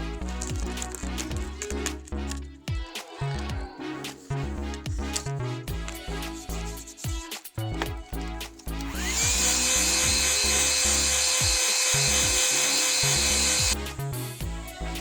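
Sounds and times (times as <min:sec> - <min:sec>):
background music: 0:00.0 - 0:15.0
hot-air blower whining and hissing: 0:09.0 - 0:13.8.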